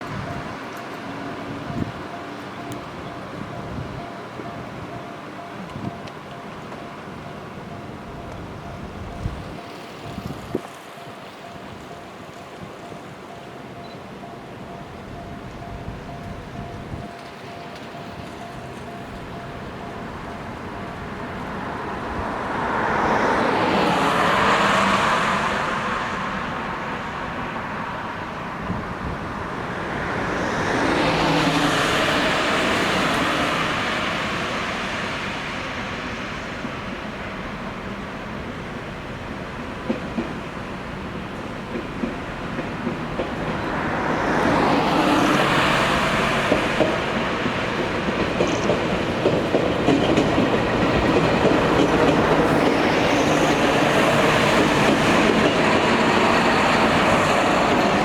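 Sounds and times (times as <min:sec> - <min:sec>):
wind buffeting microphone: 0:08.5 - 0:10.8, 0:28.1 - 0:37.0, 0:42.6 - 0:58.0
road vehicles passing: 0:16.9 - 0:38.2, 0:41.2 - 0:58.0.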